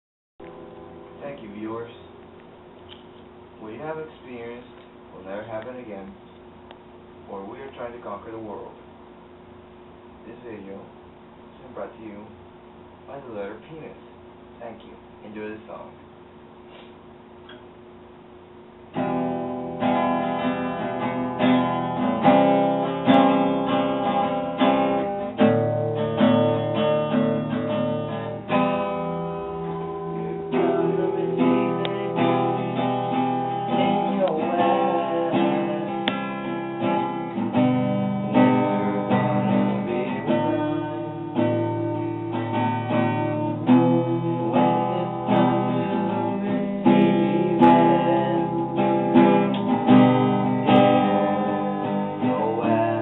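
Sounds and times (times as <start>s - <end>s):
strummed acoustic guitar: 18.9s - 53.0s
faint singing: 29.6s - 32.9s, 33.7s - 36.6s, 49.9s - 53.0s.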